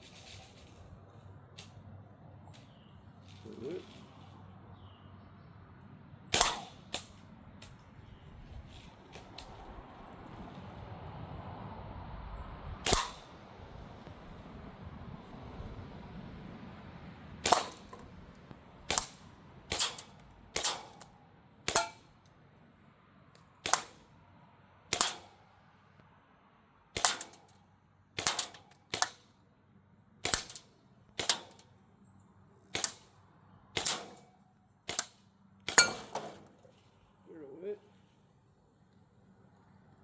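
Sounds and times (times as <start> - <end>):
bb rifle shots cracking: 6.3 - 7.9, 12.8 - 13.4, 17.4 - 18.2, 18.8 - 22.2, 23.4 - 24.1, 24.9 - 25.4, 27.0 - 27.6, 28.2 - 29.3, 30.2 - 31.7, 32.7 - 33.2, 33.8 - 36.6.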